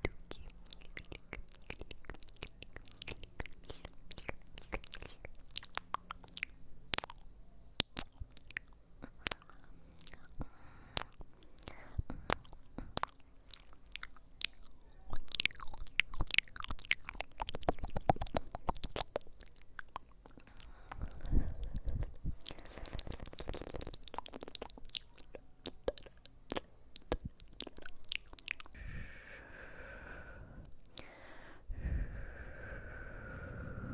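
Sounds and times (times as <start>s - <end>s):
sharp clicks and crunchy crackles: 15.3s - 28.7s.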